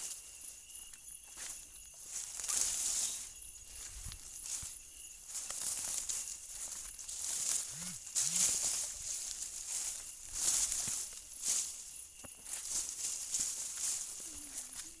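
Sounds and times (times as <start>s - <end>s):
rustling vines and leaves: 5.3s - 15.0s.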